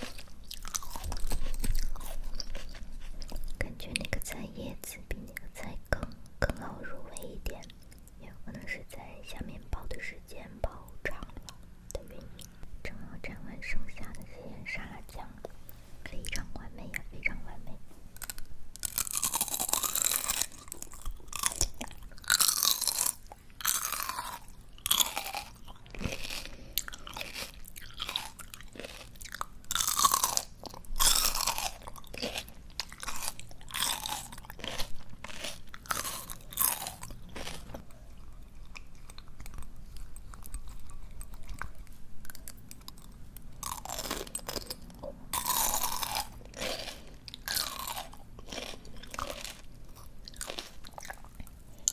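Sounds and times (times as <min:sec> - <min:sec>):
crunching and chewing greens: 0:00.0 - 0:04.3, 0:18.1 - 0:51.9.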